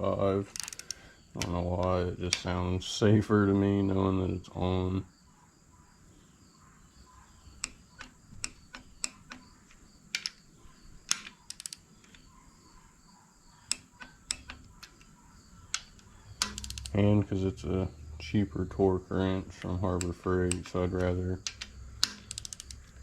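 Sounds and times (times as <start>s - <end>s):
torque wrench ratcheting clicks: 0.5s - 1.0s, 11.1s - 11.8s, 15.7s - 17.0s, 21.4s - 23.0s.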